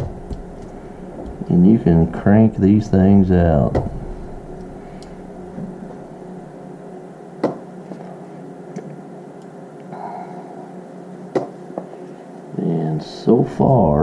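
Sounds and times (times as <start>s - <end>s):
low hum: 0.0s - 14.0s.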